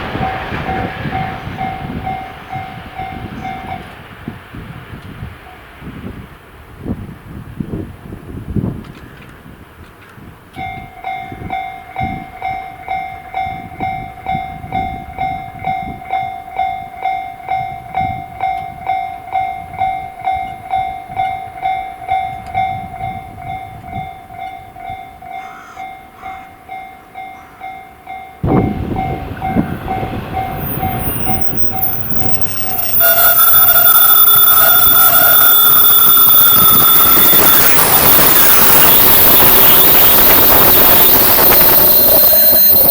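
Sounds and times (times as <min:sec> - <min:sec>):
level crossing warning bell: 0:00.0 - 0:04.0, 0:10.5 - 0:42.9
electric train passing: 0:00.0 - 0:04.8, 0:26.0 - 0:42.9.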